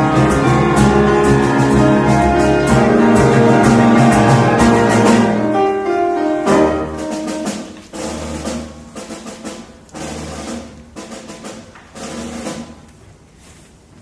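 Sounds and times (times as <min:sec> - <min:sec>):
low bass notes: 0:00.0 - 0:05.5
drum hits: 0:00.0 - 0:05.7, 0:06.4 - 0:12.9
pit band playing: 0:00.0 - 0:13.0.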